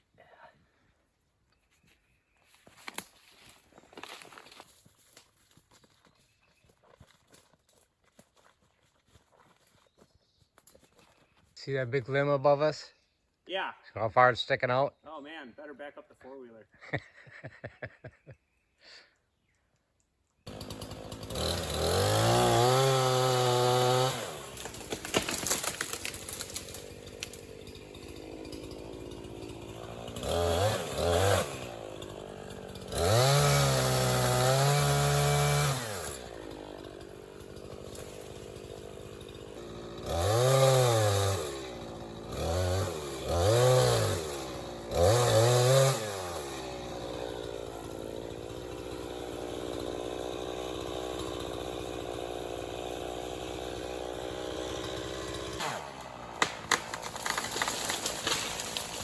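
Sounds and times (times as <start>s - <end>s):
two-stroke chainsaw revving: 20.5s - 59.0s.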